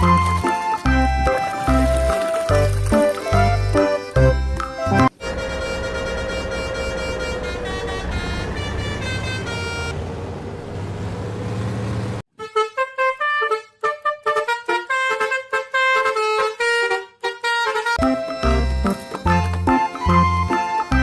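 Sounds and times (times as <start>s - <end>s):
bus horn playing a melody: 3.2s - 10.0s, 12.3s - 21.0s
steady rumble: 5.2s - 12.2s.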